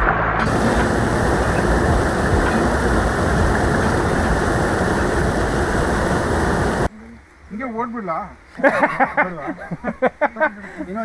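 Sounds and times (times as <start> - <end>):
waterfall roaring: 0.4 - 6.9.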